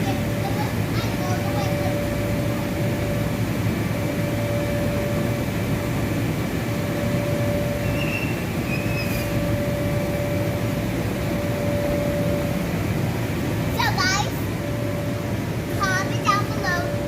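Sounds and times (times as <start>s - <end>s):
blower fans humming: 0.0s - 17.0s.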